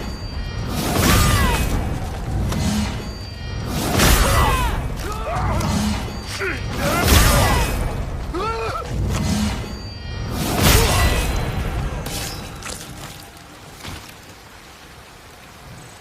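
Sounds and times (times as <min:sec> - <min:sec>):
ringing metallic tone: 0:00.0 - 0:04.9, 0:09.2 - 0:12.6.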